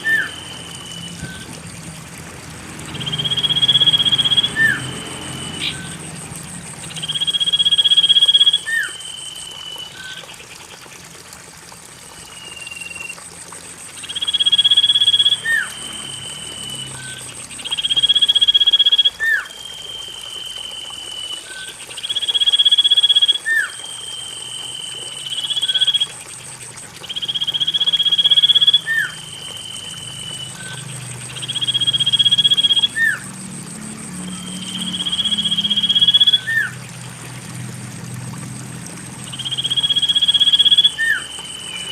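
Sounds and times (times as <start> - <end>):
bird whistles: 0.0 - 1.5, 3.0 - 4.8, 5.4 - 6.0, 12.3 - 13.1, 14.0 - 26.0, 27.1 - 33.2, 34.3 - 36.7, 39.3 - 41.9.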